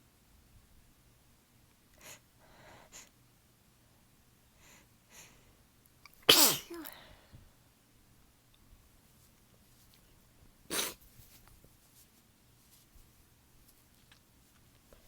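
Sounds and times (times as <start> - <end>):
person sneezing: 6.3 - 7.0, 10.7 - 11.0.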